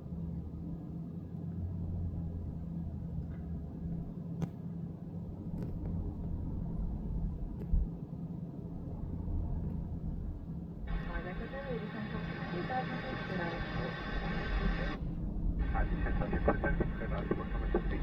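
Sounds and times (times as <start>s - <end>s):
low engine rumble: 0.0s - 18.0s
steady hum: 8.7s - 18.0s
faint clicks: 15.6s - 18.0s.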